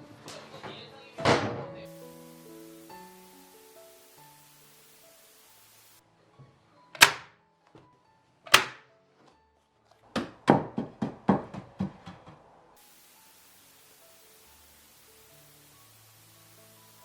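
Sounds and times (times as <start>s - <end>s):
knocks on wood: 7.0s - 7.3s, 8.5s - 8.8s, 10.2s - 12.4s.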